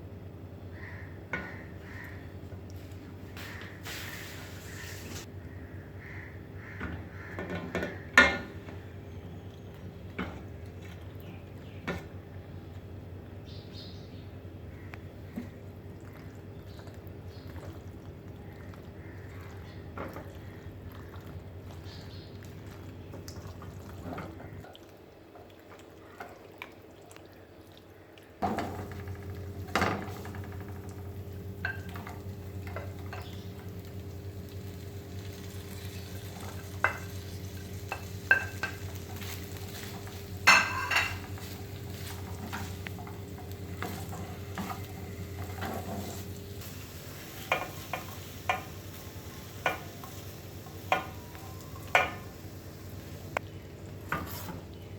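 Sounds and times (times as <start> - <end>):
spoon scraping food in pan: 36.4 - 52.3
spoon knocking against pan: 40.4 - 41.5, 50.8 - 51.2.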